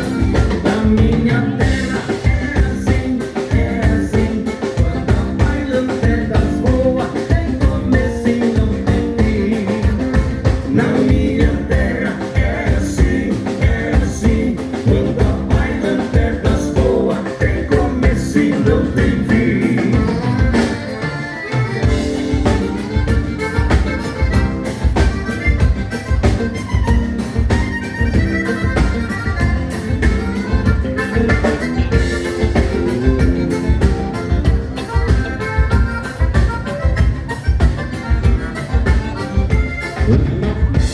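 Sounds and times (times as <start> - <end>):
person singing: 0.0 - 25.6
drum kit beat: 0.0 - 40.9
live band playing dance music: 0.0 - 40.9.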